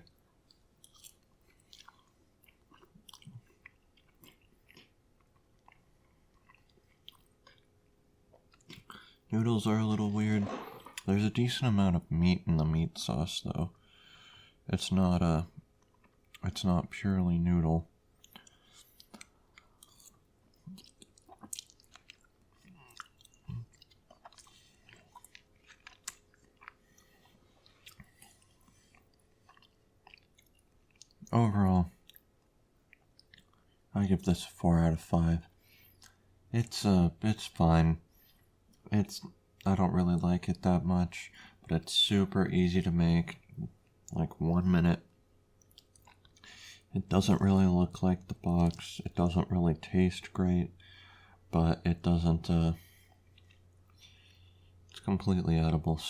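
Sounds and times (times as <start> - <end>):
faint chewing with wet mouth clicks: 0.0 - 9.3, 15.6 - 16.5, 18.1 - 33.9, 35.4 - 36.3, 45.1 - 46.8, 53.0 - 55.1.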